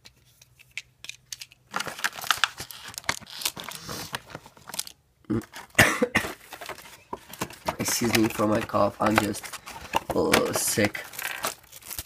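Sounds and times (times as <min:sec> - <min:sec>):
plastic packaging crinkling and tearing: 0:01.7 - 0:05.8, 0:06.4 - 0:12.0
short loud coughs: 0:05.8 - 0:06.4.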